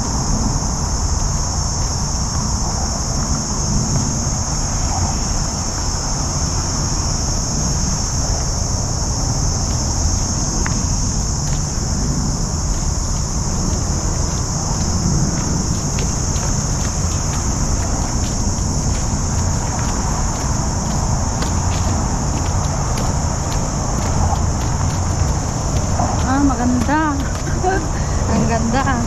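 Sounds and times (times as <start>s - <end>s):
cicadas buzzing: 0.0s - 29.0s.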